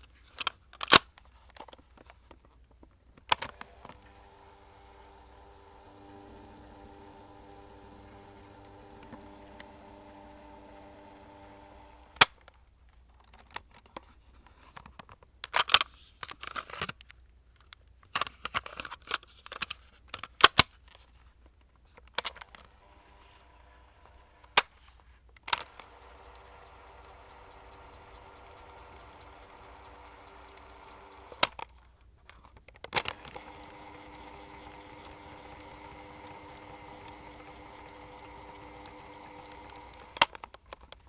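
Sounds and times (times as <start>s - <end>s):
tape mechanism whirring: 3.3s - 12.4s, 22.2s - 31.8s, 32.8s - 40.7s.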